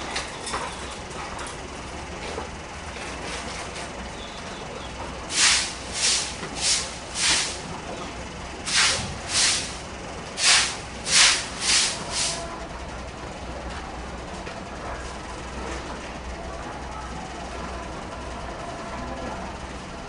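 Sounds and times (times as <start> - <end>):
short loud hiss bursts: 5.3 - 7.6, 8.7 - 9.8, 10.4 - 12.4.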